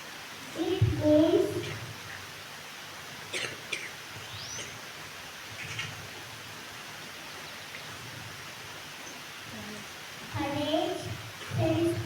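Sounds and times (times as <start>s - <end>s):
steady background hiss: 0.0s - 12.0s
faint bird chirps: 4.2s - 4.8s.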